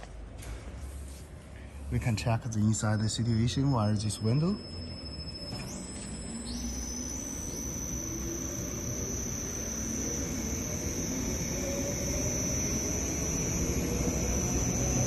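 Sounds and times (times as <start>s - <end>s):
high steady whine: 1.6s - 15.0s
mixer machine drone: 3.4s - 15.0s.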